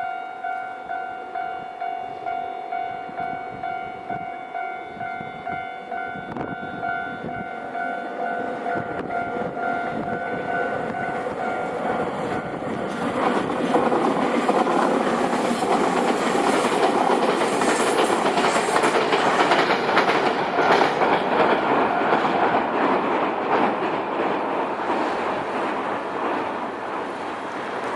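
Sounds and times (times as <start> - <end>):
level crossing warning bell ringing: 0.0 - 12.8
electric train passing: 0.0 - 27.9
wheels clacking over rail joints: 8.4 - 27.9.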